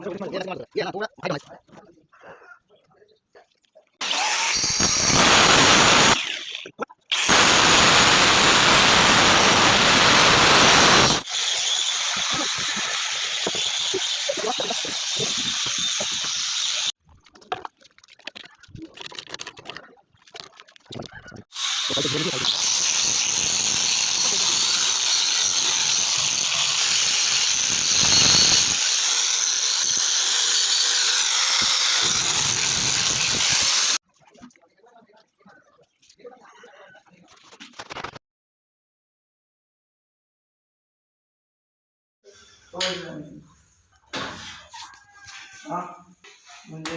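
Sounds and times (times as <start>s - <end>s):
power grinder cutting stone: 4.0s - 17.0s, 21.5s - 34.0s.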